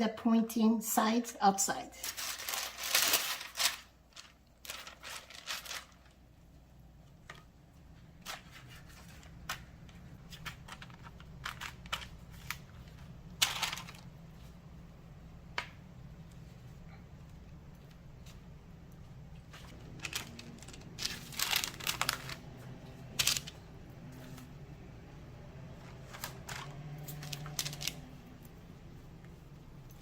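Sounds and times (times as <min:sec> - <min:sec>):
faint low hum: 0:00.0 - 0:30.0
crinkle: 0:02.0 - 0:06.3, 0:07.1 - 0:14.6, 0:17.7 - 0:24.6, 0:25.7 - 0:28.6.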